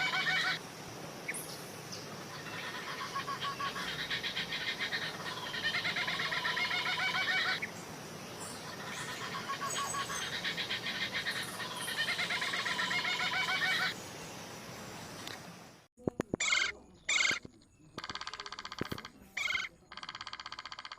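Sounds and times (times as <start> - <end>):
animal rapid chirping: 16.1 - 20.9.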